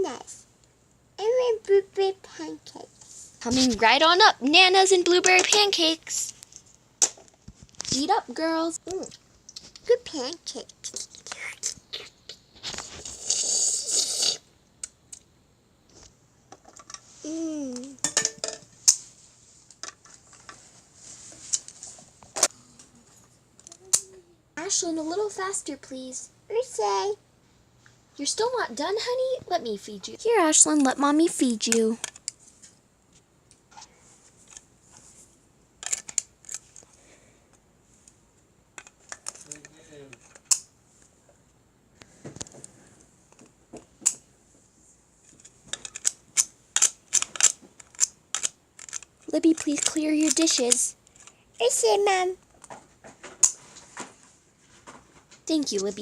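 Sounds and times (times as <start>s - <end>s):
toy dishes clicking: 45.8s - 50.9s.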